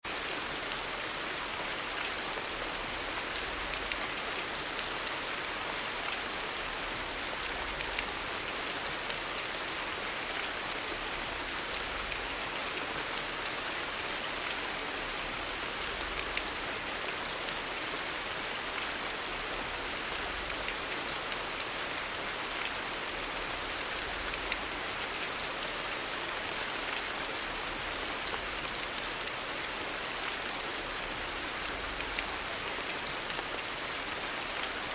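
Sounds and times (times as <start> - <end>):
rain on hard surfaces: 0.0 - 34.9.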